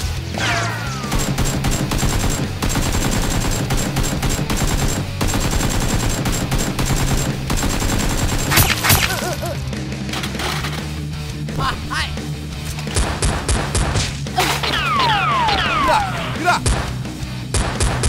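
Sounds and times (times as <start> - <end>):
background music: 0.0 - 18.0
automatic gunfire: 1.0 - 9.3.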